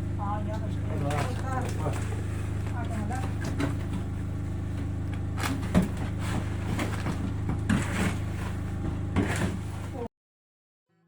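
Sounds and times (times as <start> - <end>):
engine running: 0.0 - 10.1
sharp knocks and scrapes: 5.4 - 10.0.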